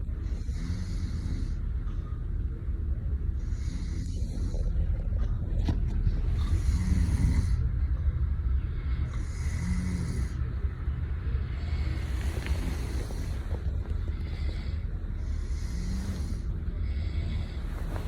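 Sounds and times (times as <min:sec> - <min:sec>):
steady low rumble: 0:00.0 - 0:18.0
person snoring: 0:00.3 - 0:01.6, 0:06.4 - 0:07.6, 0:09.1 - 0:10.5, 0:11.6 - 0:18.0.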